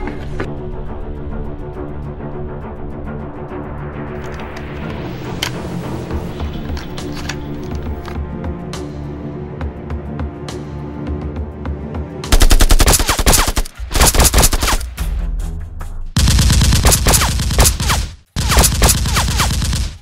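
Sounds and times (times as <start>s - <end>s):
background music: 0.0s - 18.0s
automatic gunfire effects: 12.3s - 14.9s, 16.2s - 20.0s.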